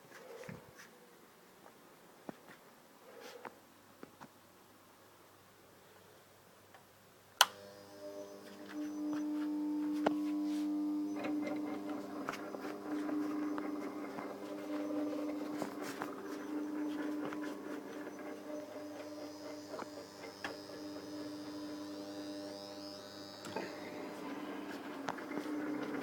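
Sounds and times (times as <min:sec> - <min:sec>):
electric motor humming: 0:07.4 - 0:26.0.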